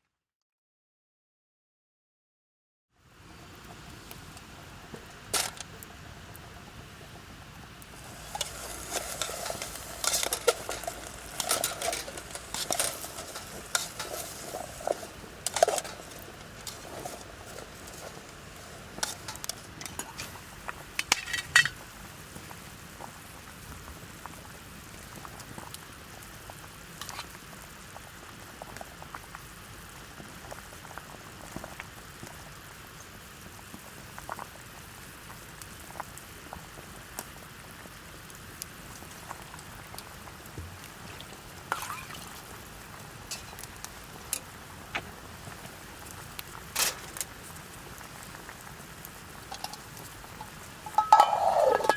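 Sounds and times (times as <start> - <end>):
food cooking hiss: 3.0 - 51.9
metal utensil scraping a pot: 8.0 - 20.4, 43.3 - 43.7, 49.5 - 51.9.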